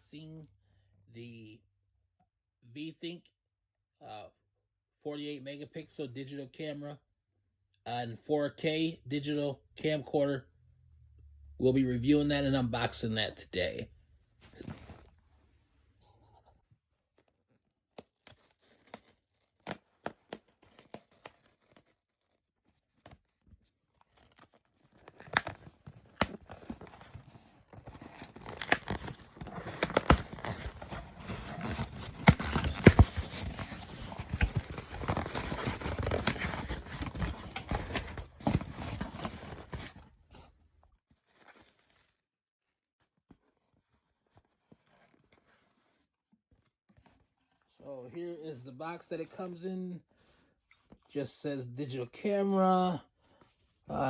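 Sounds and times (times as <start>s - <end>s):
packaging crinkling and tearing: 18.1s - 39.8s
packaging rustling: 18.1s - 40.0s.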